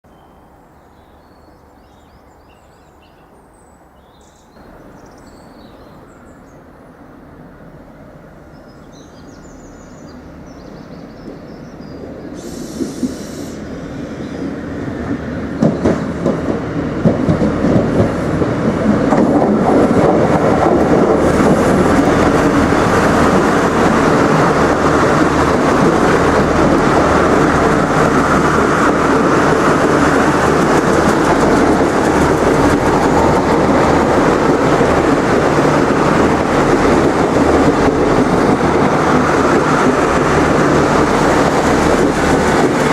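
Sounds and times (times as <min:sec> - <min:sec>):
rumble of train wheels and engines: 0:00.1 - 0:42.9
short hiss: 0:12.4 - 0:13.6
train wheels clicking over rail joints: 0:15.0 - 0:42.9.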